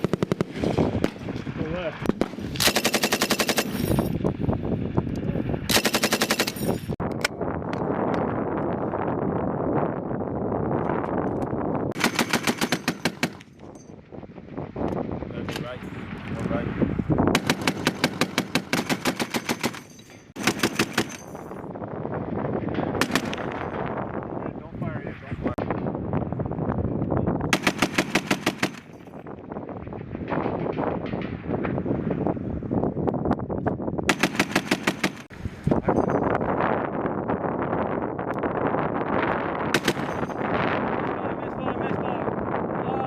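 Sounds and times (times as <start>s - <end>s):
low rumble of gunfire: 0.0s - 5.0s, 11.9s - 13.5s, 14.1s - 19.8s, 20.4s - 24.4s, 25.5s - 35.4s, 39.0s - 41.2s
machine gun bursts: 2.6s - 3.8s, 5.7s - 6.7s, 12.0s - 13.4s, 17.4s - 21.2s, 34.1s - 35.3s
single gunshots: 39.7s - 40.2s.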